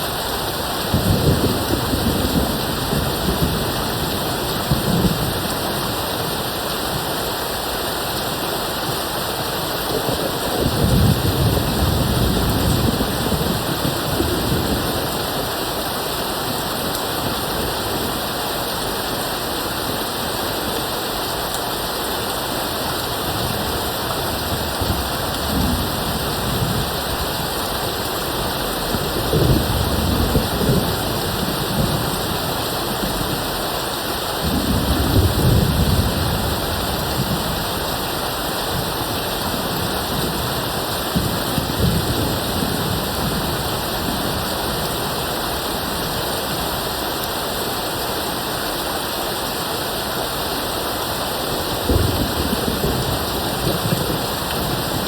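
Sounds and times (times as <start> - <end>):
heavy rain hiss: 0.0 - 55.0
distant thunder rumbling: 0.3 - 5.8, 10.0 - 15.6, 23.4 - 33.6, 51.8 - 55.0.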